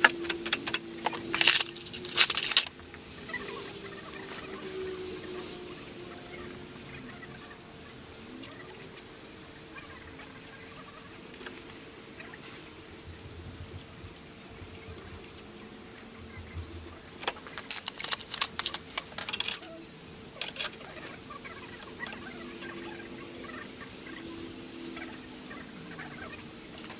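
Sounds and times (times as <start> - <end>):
small hard objects rattling: 0.0 - 4.4, 13.1 - 15.7, 17.1 - 19.8, 20.4 - 20.9
faint steady hum: 0.0 - 26.9.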